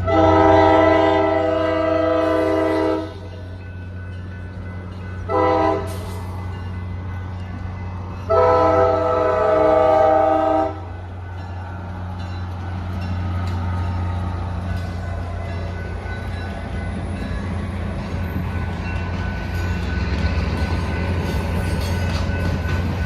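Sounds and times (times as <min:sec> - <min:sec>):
locomotive air horn chord: 0:00.0 - 0:03.2, 0:05.3 - 0:06.2, 0:08.3 - 0:10.9.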